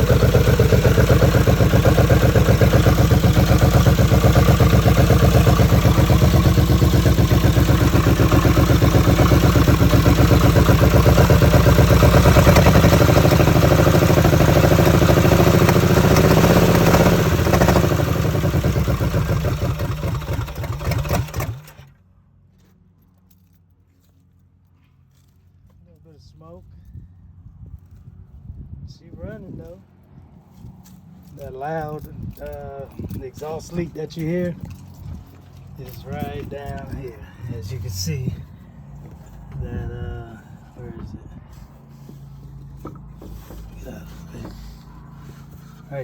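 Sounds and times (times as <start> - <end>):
exhaust leak pulsing: 0.0 - 21.8
loud car engine running: 0.0 - 21.9, 34.5 - 46.0.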